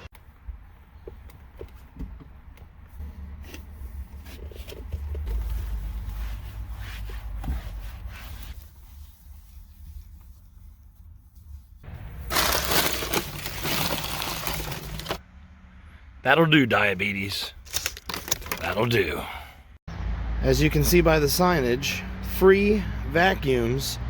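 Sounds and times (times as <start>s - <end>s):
trash crinkling and rustling: 11.9s - 15.2s, 17.6s - 19.0s
loud rush of rustling: 12.1s - 15.2s.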